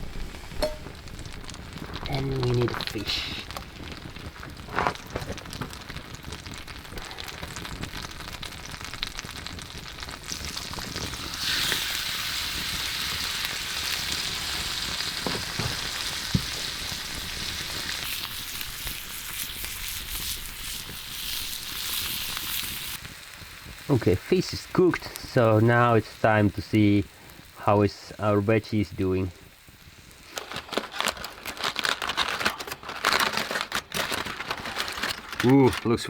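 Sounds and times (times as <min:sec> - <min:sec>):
fish sizzling in a pan: 0:00.0 - 0:35.7.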